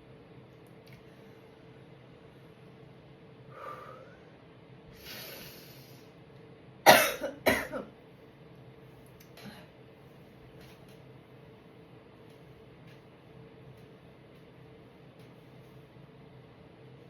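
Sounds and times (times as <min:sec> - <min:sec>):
woman coughing loudly: 0:06.8 - 0:08.0.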